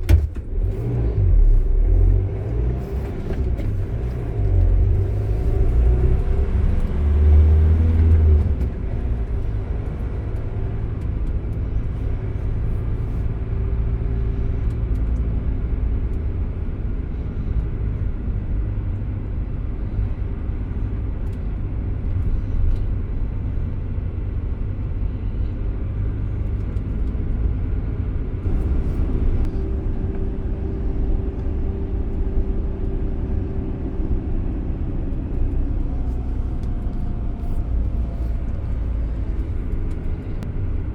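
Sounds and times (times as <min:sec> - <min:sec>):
van engine and road noise: 0:00.0 - 0:40.9.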